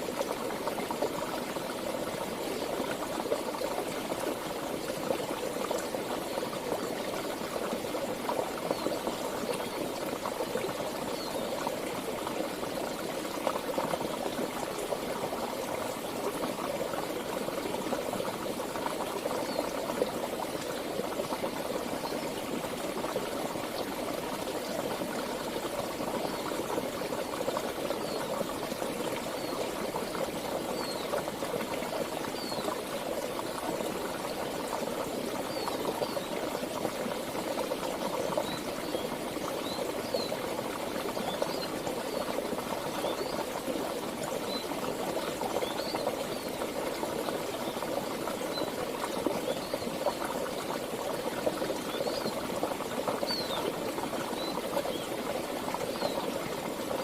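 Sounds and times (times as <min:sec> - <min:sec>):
stream water rushing and burbling: 0:00.0 - 0:57.0.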